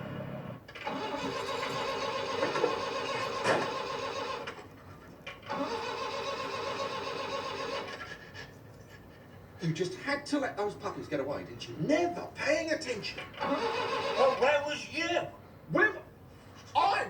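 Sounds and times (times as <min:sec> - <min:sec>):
engine starter cranking: 0:00.7 - 0:04.6, 0:05.3 - 0:08.1, 0:13.3 - 0:14.4.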